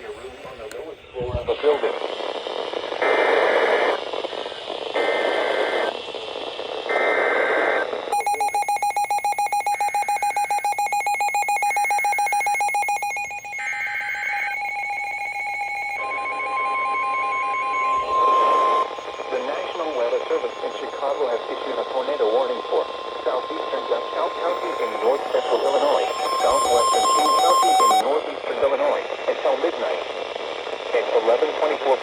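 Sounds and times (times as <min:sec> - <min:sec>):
steady beep-like tone: 0:08.1 - 0:28.1
fast-pulsing electronic alarm tone: 0:08.2 - 0:28.0
harsh digital data bursts: 0:08.2 - 0:28.0.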